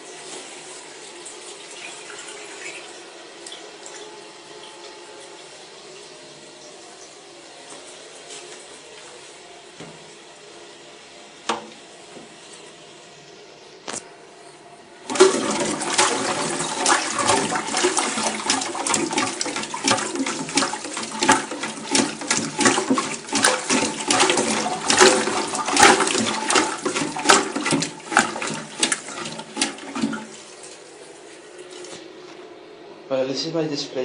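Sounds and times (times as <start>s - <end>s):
toilet flushing: 0.0s - 6.8s, 15.0s - 32.2s.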